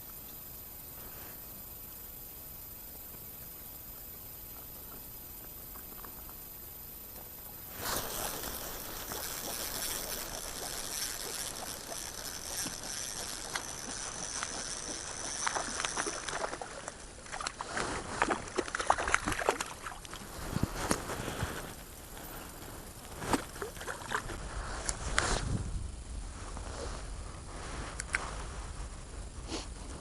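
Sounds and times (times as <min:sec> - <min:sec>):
water sloshing and splashing: 0:07.3 - 0:21.6.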